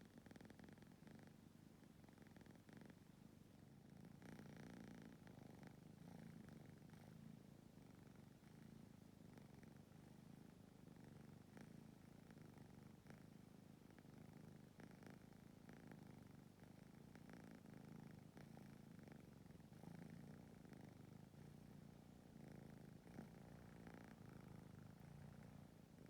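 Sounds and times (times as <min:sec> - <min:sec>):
cat purring: 0:00.0 - 0:26.0.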